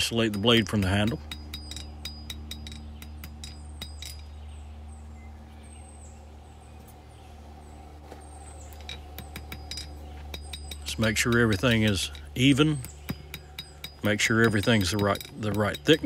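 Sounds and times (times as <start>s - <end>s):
hammer striking hot steel on anvil: 0.0s - 4.3s, 8.8s - 16.0s
steady low hum: 0.0s - 16.0s.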